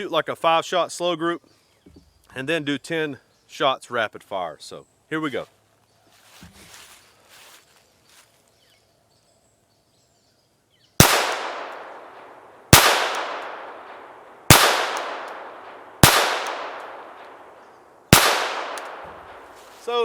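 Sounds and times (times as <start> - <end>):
pistol shots with echo: 11.0 - 19.9.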